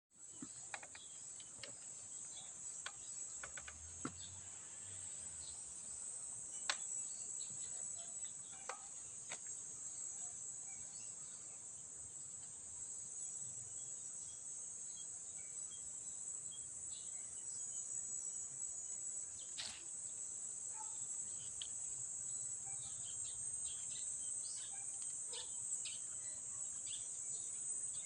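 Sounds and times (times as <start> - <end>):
insect chorus: 0.2 - 28.0
faint chirps: 20.7 - 28.0.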